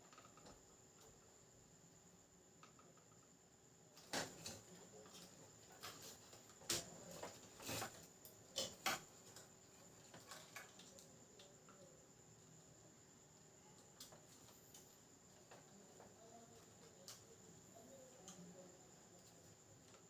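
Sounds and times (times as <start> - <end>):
soft rustling of cable: 4.0 - 12.6, 13.6 - 20.0.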